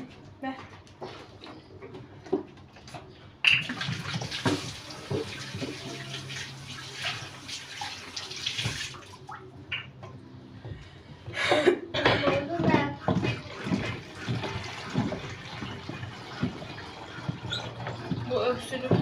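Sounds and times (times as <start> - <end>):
tap water filling a bottle: 3.4 - 10.0, 12.6 - 19.0.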